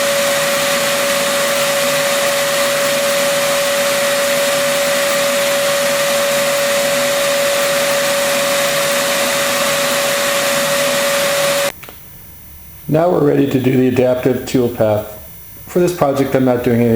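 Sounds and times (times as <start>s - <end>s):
router spindle whining: 0.0s - 11.7s.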